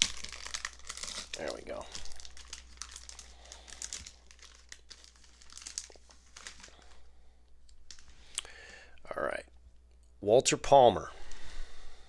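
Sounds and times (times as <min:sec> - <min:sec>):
plastic wrapper crinkling: 0:00.0 - 0:08.4.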